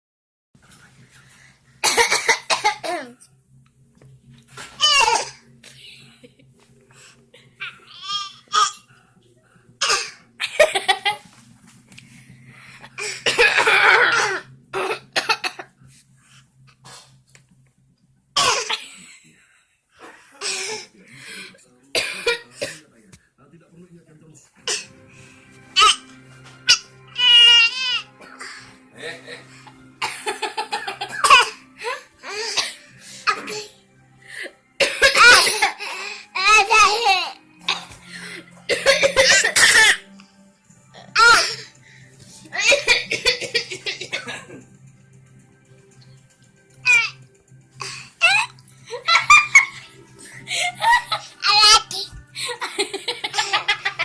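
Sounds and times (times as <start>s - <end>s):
baby coughing: 1.8s - 3.2s, 4.7s - 5.4s, 7.6s - 8.8s, 9.8s - 11.2s, 12.9s - 15.7s, 18.4s - 18.9s, 22.0s - 22.8s, 24.7s - 24.9s, 25.8s - 26.1s, 30.0s - 31.6s, 32.2s - 33.7s, 34.8s - 35.8s, 36.4s - 37.9s, 38.7s - 40.0s, 41.0s - 41.6s, 42.5s - 44.6s, 46.8s - 47.2s, 47.8s - 48.5s, 50.5s - 52.1s
baby laughing: 4.7s - 5.4s, 36.4s - 37.9s, 46.9s - 47.2s, 48.2s - 49.9s, 50.5s - 54.0s.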